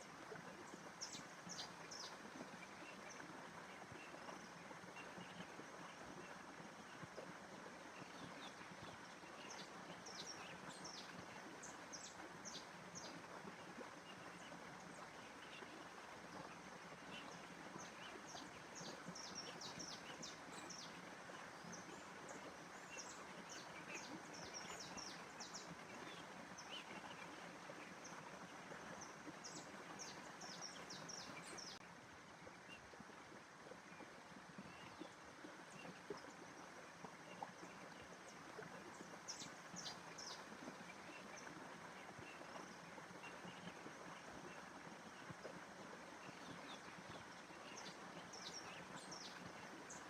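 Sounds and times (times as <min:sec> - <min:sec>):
soft steady hiss: 0:00.0 - 0:50.0
small birds chirping: 0:00.6 - 0:06.3, 0:07.8 - 0:13.3, 0:14.0 - 0:31.8, 0:37.2 - 0:45.2, 0:46.2 - 0:50.0.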